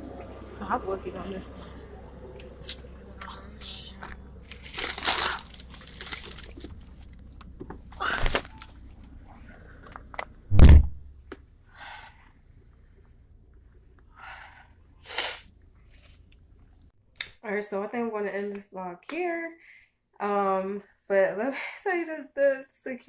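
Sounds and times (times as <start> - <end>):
crinkling crunching handling noise: 4.0 - 10.3
heavy dull thump: 10.5 - 11.4.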